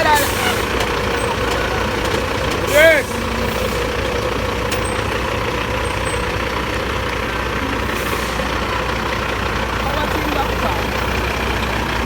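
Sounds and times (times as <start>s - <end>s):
diesel engine droning: 0.0s - 12.0s.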